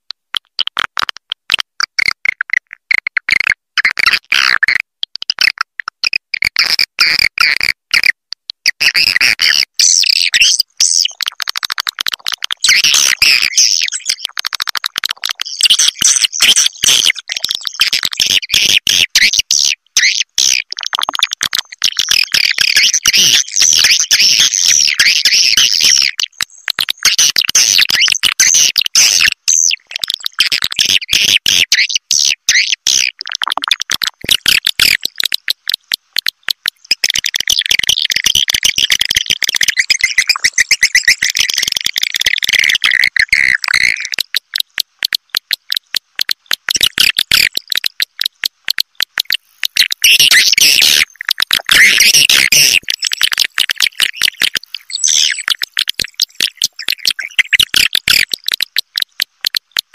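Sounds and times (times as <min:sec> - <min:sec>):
fast dry clicks: 0:10.7 - 0:59.9
swiftlets twittering chirps: 0:37.8 - 0:44.2, 0:49.2 - 0:58.4.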